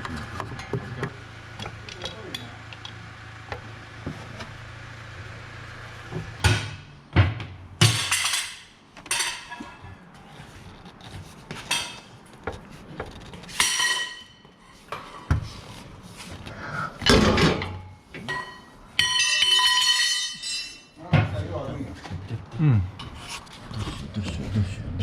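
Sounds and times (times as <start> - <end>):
metal tools clinking: 18.3 - 21.0.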